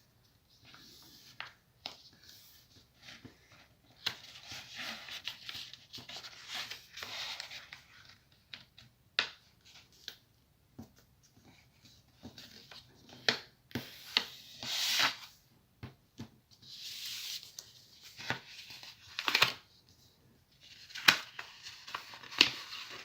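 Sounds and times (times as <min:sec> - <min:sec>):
paper rustling and crinkling: 0:00.6 - 0:08.7, 0:16.6 - 0:20.0, 0:20.6 - 0:23.0.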